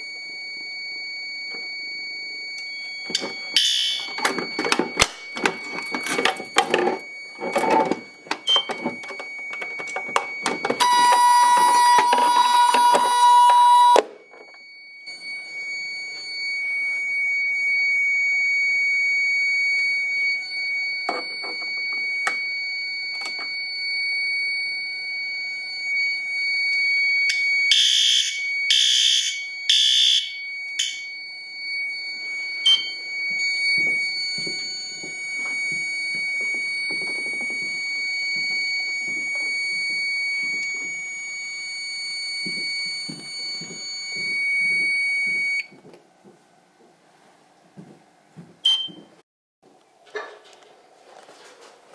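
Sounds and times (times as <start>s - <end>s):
high-pitched alarm tone: 0.0s - 45.8s
buzzy horn blasts: 10.8s - 14.0s.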